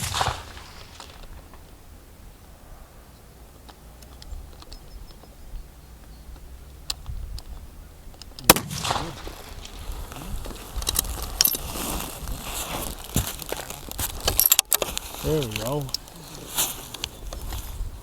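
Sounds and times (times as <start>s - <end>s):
rifle shot: 0.0s - 1.6s, 8.4s - 10.0s
faint clicks: 3.6s - 5.4s
clattering and rustling: 9.4s - 17.8s.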